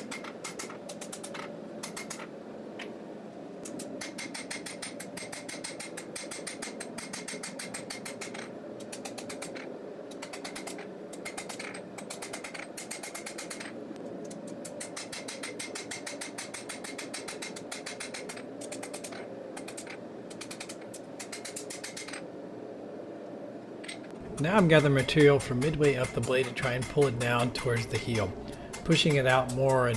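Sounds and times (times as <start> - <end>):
steady hum: 0.0 - 29.9
hammer blows on anvil: 24.2 - 29.9.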